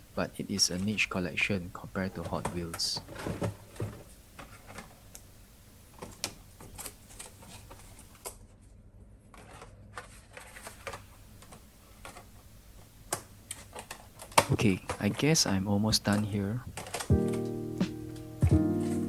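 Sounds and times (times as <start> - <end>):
low room hum: 0.0 - 19.0.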